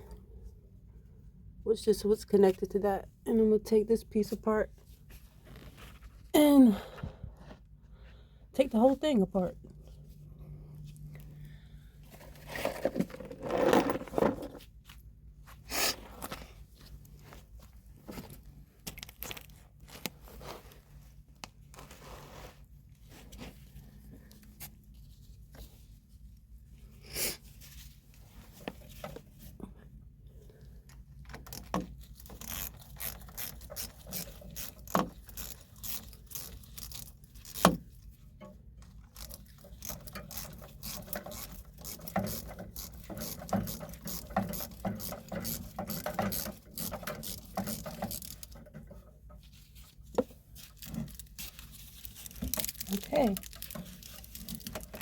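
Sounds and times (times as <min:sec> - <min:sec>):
drain pipe fittings scraping: 0:31.4 - 0:50.0, 0:50.6 - 0:55.0.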